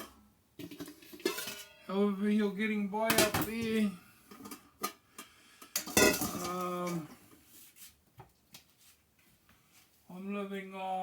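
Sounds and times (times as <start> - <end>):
dishes and cutlery clinking: 0.0 - 1.9, 3.1 - 7.0.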